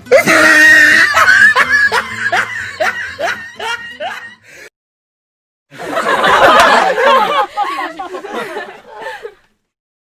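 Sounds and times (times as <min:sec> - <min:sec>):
snickering laugh: 0:00.9 - 0:04.4.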